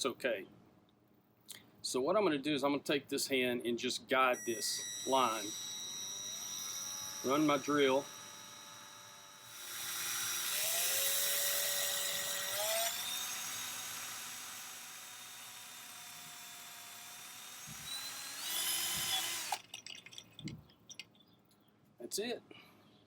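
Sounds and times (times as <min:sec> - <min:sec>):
electric drill whining: 0:04.4 - 0:19.6.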